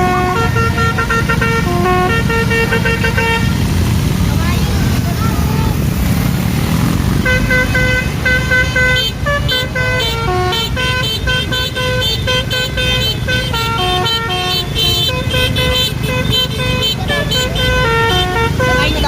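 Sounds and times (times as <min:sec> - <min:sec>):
musical bus air horn: 0:00.0 - 0:03.7, 0:07.2 - 0:19.0
low engine rumble: 0:00.0 - 0:19.0.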